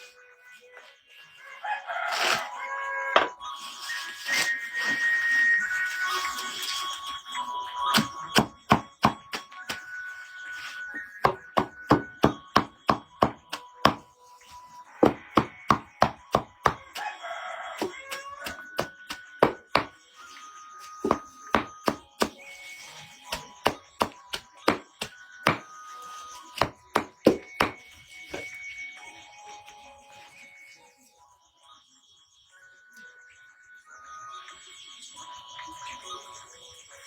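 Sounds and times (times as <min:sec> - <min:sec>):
blade chopping: 0:07.9 - 0:09.8, 0:21.0 - 0:22.5.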